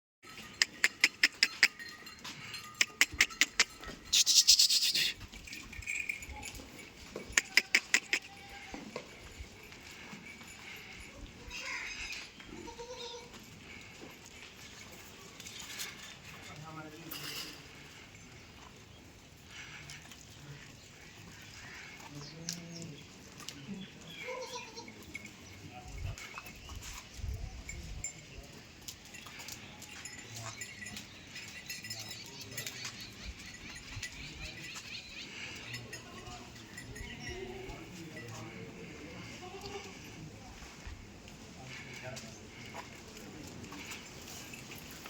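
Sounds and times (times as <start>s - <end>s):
goat low call: 2.8s - 5.3s, 7.3s - 8.8s.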